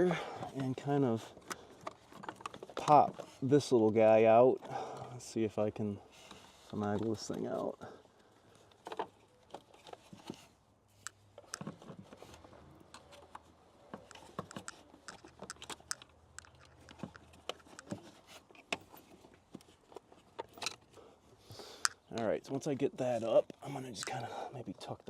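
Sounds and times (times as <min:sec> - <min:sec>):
small plastic clicks: 0:11.0 - 0:20.9.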